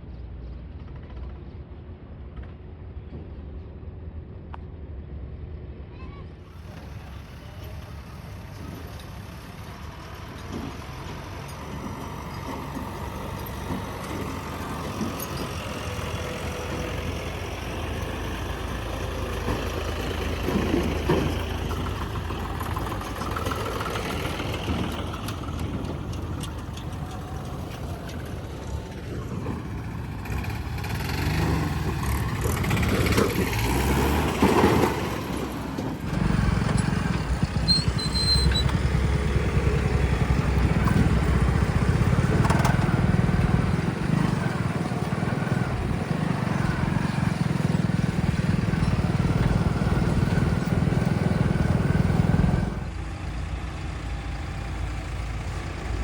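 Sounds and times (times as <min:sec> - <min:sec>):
closer engine: 0:00.0 - 0:56.0
heavy vehicle engines running: 0:00.0 - 0:56.0.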